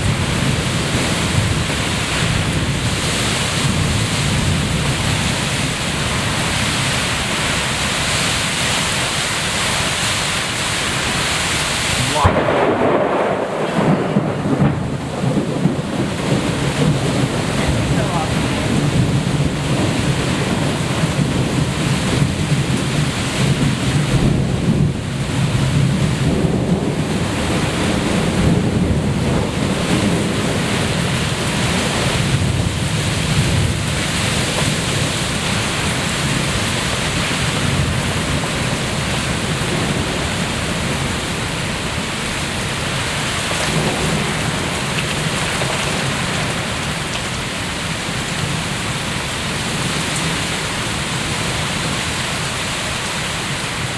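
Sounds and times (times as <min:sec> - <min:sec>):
heavy rain pouring: 0:00.0 - 0:53.9
rolling thunder: 0:12.0 - 0:42.5, 0:43.6 - 0:47.1.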